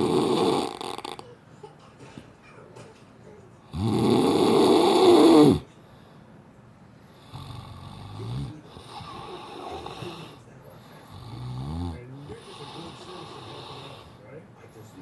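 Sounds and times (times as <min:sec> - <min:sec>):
man snoring: 0:00.0 - 0:01.2, 0:03.7 - 0:05.7, 0:07.2 - 0:10.4, 0:11.0 - 0:14.2.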